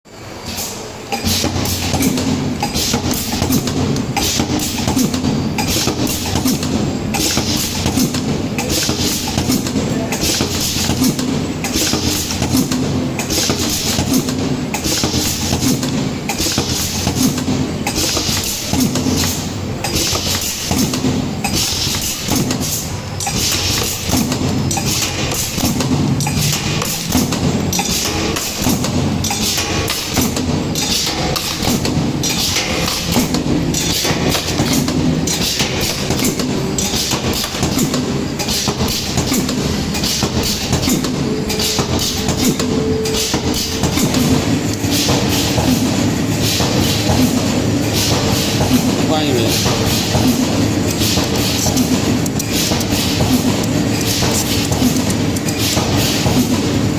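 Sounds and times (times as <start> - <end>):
machine knocking: 0.3 - 56.9.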